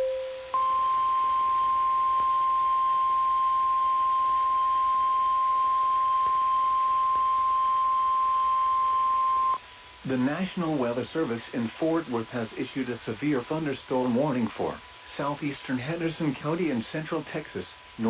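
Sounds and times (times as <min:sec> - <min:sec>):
steady high warning beep: 0:00.0 - 0:09.6.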